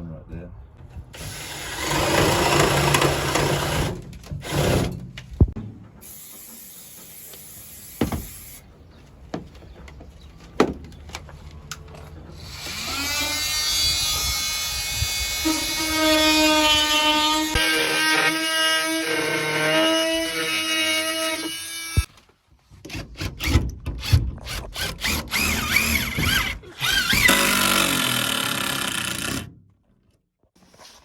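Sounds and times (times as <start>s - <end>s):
power drill running: 1.2s - 4.9s, 24.8s - 29.4s.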